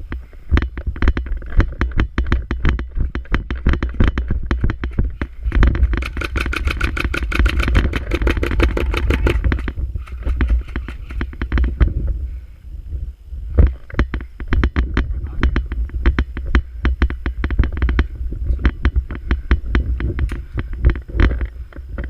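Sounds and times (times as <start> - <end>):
airsoft gunfire bursts: 6.0 - 11.2.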